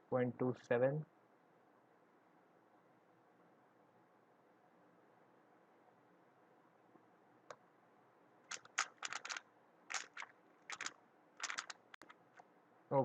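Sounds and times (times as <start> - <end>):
puzzle cube clicking turns: 8.5 - 12.2.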